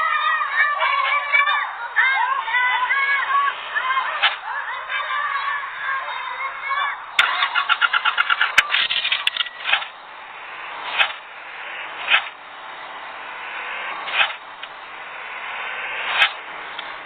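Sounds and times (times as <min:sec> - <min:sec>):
road traffic noise: 0:00.0 - 0:17.0
short sharp bursts: 0:00.0 - 0:17.0
short pulses: 0:07.0 - 0:17.0.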